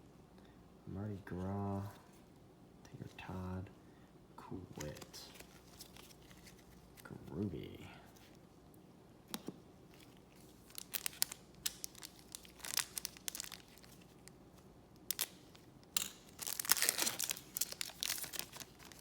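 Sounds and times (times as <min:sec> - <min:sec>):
cards being handled: 0:04.7 - 0:07.4, 0:16.4 - 0:19.0
wrapper crinkling: 0:04.8 - 0:07.1, 0:09.9 - 0:14.4, 0:15.0 - 0:19.0.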